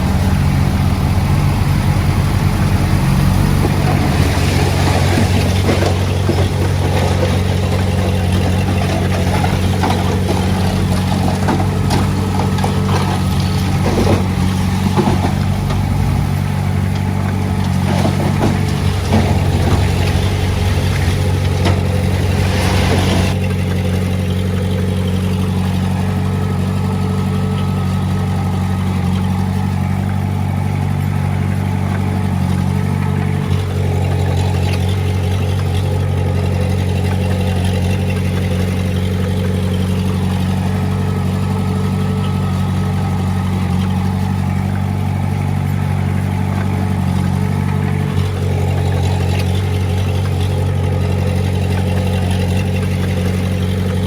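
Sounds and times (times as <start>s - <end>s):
diesel engine running: 0.0s - 54.0s
clattering noise: 3.4s - 23.4s.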